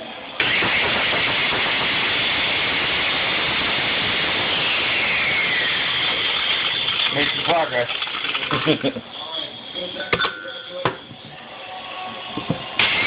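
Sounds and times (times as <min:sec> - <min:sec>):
faint whine: 0:00.0 - 0:08.0, 0:08.8 - 0:13.0
blender running: 0:00.4 - 0:08.9.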